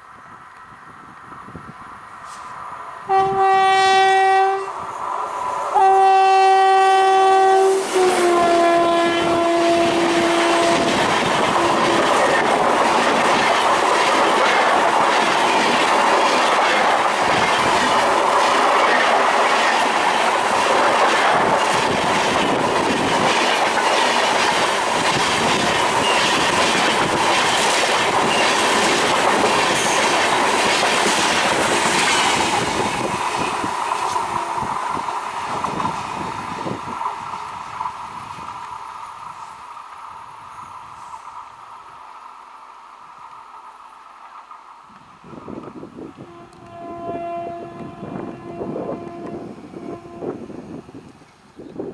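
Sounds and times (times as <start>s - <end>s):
train coaches rushing over rails: 0.0s - 51.9s
locomotive horn blasts: 3.1s - 4.8s, 5.8s - 12.3s, 34.1s - 34.9s, 46.2s - 50.5s.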